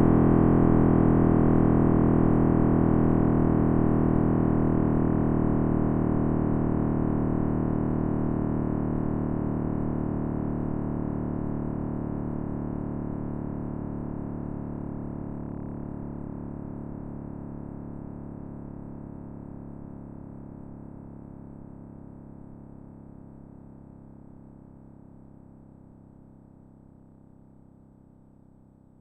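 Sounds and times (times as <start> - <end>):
synthesized low drone: 0.0 - 17.1.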